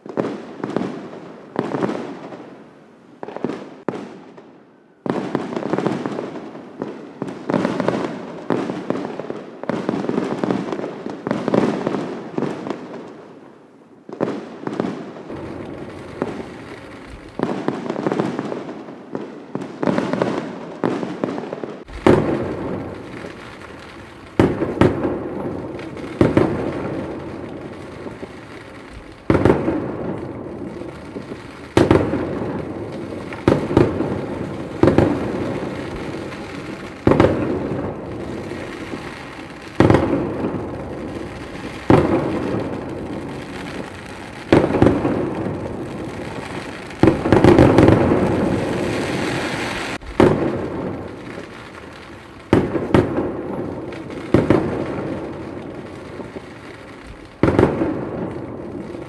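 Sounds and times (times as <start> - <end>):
firework shell bursts and crackle: 14.1 - 59.0
loud firework bangs echoing: 14.1 - 59.0.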